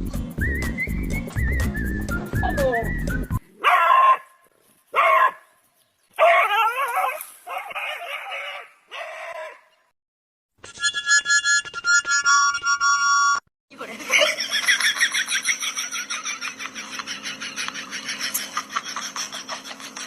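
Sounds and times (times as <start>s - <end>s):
music with whistled tune: 0.0s - 3.4s.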